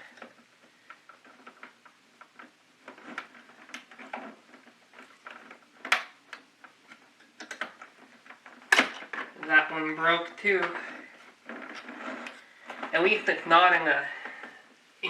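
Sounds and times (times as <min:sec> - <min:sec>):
plastic clips clicking and scraping: 0:00.0 - 0:09.6, 0:10.4 - 0:13.0.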